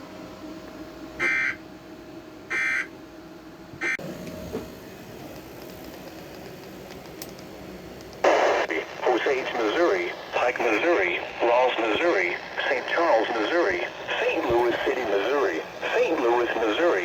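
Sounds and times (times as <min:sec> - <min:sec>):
faint steady hum: 0:00.0 - 0:17.0
buzzy digital data bursts: 0:08.2 - 0:17.0.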